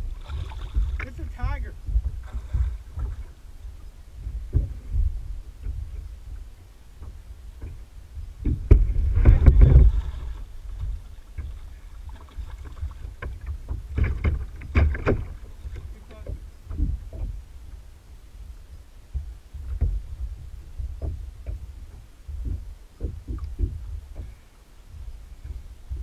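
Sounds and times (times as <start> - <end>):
water lapping around hull: 0.0 - 26.0
wind rumble on microphone: 0.0 - 26.0
knocks on kayak hull: 8.4 - 11.6, 12.2 - 17.4, 19.1 - 24.4.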